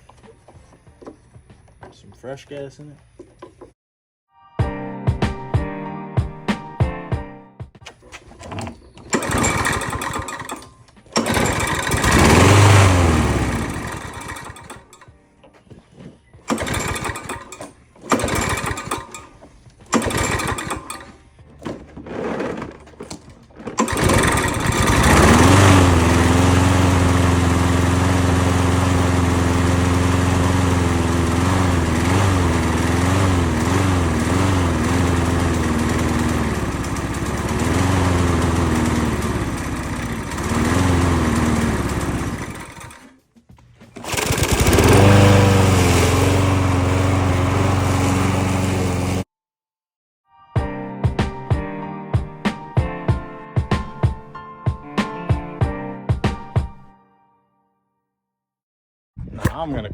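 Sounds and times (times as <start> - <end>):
lawn mower engine pull-starting: 7.8 - 43.2, 43.8 - 49.3
lawn mower engine running: 7.8 - 43.2, 43.8 - 49.3.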